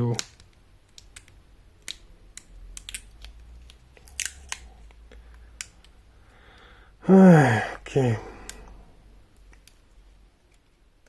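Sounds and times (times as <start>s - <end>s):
plastic phone parts handled: 0.2s - 5.9s.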